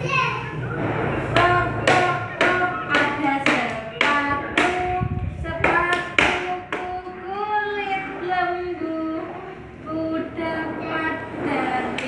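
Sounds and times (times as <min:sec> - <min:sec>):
rhythmic claps: 0:00.8 - 0:07.3.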